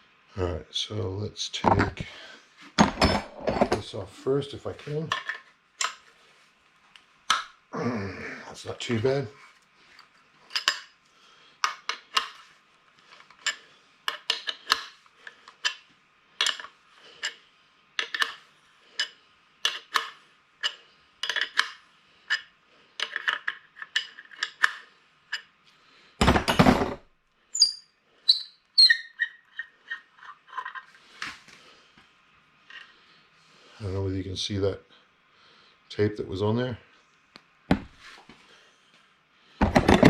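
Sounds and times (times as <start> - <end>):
metal tools clicking on fittings: 10.5 - 11.0, 16.4 - 17.4, 18.0 - 25.5
high squeaks: 27.6 - 29.8.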